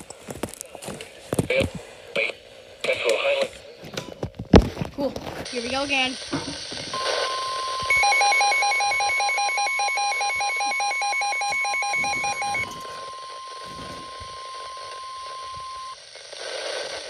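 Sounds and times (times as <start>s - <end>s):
fast pulsing beep alarm: 7.0s - 12.8s
steady high alarm tone: 7.0s - 16.0s.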